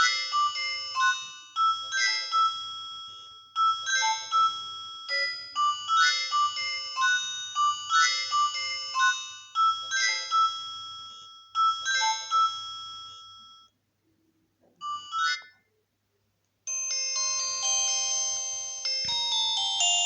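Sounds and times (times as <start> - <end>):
phone ringtone melody: 0.0 - 13.7, 14.8 - 15.5, 16.7 - 20.0.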